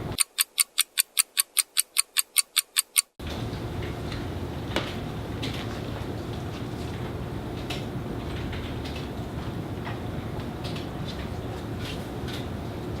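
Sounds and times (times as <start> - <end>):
quick sharp clock ticks: 0.1 - 3.2.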